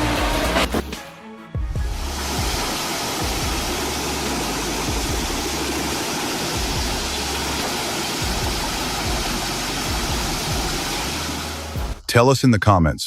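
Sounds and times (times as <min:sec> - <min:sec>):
low engine hum: 0:01.9 - 0:12.0.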